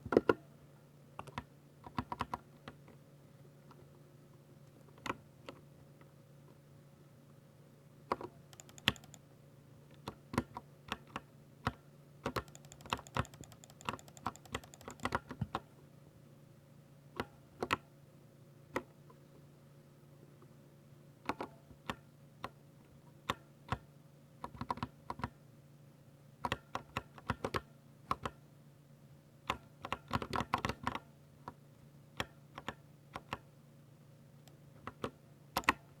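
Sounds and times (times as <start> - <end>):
mechanical keyboard typing: 8.1 - 9.2, 12.3 - 15.6.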